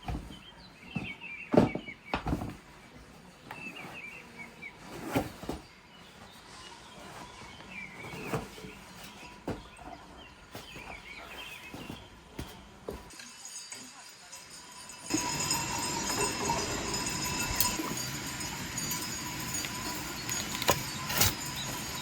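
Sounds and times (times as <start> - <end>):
small birds chirping: 5.7 - 12.3.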